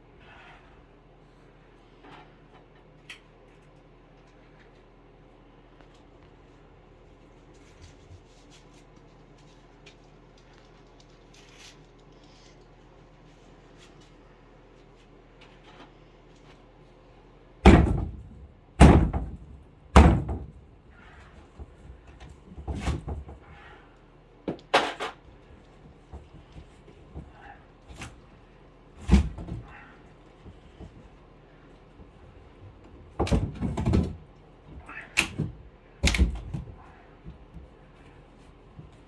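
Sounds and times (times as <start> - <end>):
faint handling sounds: 0.1 - 17.3
heavy knocks on wooden framing: 17.6 - 20.7.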